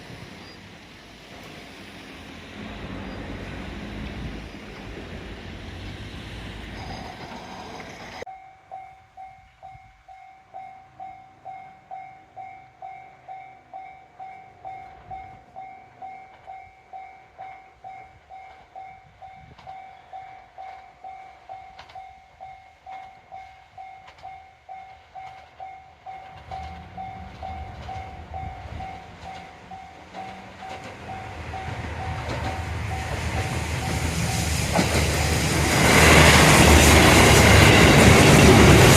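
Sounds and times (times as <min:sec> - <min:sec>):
diesel train rumble: 0:00.0 - 0:08.3, 0:10.9 - 0:38.9
level crossing warning bell: 0:06.6 - 0:34.5.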